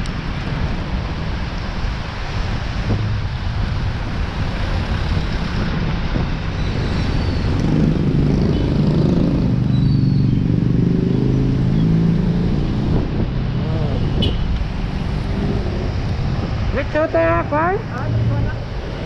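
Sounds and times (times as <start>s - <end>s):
road traffic: 0.0s - 19.0s
wind on microphone: 0.0s - 19.0s
vehicle engine passing: 7.0s - 19.0s.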